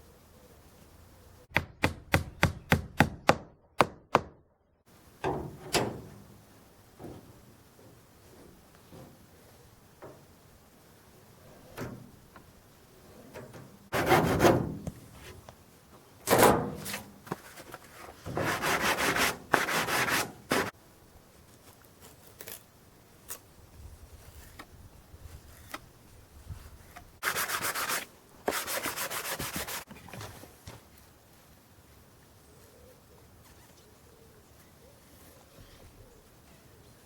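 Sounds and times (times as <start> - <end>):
wood being sanded: 18.4 - 20.7, 27.2 - 29.9.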